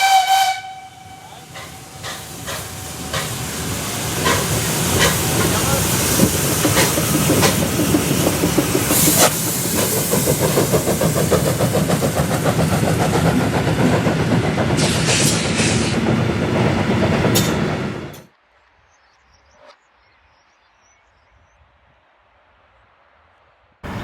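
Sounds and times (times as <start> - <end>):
steam hissing: 0.0 - 18.1
train wheels clacking over rail joints: 1.3 - 18.3.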